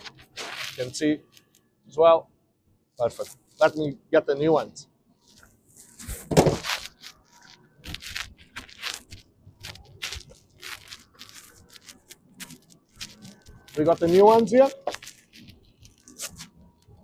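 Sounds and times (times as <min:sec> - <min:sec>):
packaging crackling and rustling: 0:05.3 - 0:16.6.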